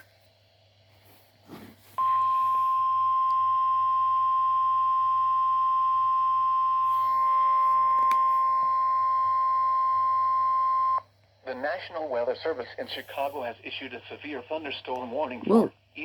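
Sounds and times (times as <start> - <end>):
steady high warning tone: 2.0 - 11.0.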